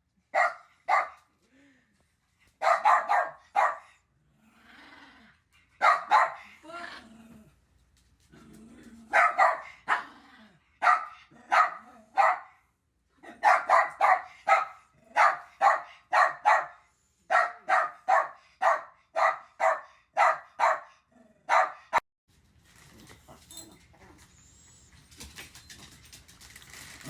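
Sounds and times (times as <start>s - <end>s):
dog barking sharply: 0.4s - 1.2s, 2.6s - 3.9s, 5.8s - 6.4s, 9.1s - 10.0s, 10.8s - 12.6s, 13.4s - 20.9s, 21.5s - 22.0s.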